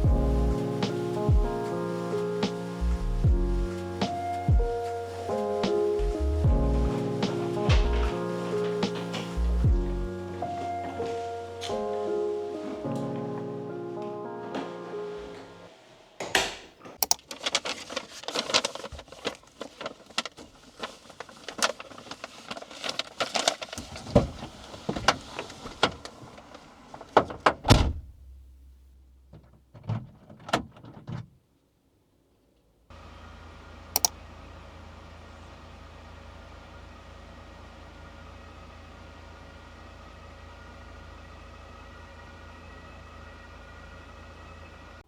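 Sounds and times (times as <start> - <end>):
steady low hum: 0.0 - 11.5, 32.9 - 45.0.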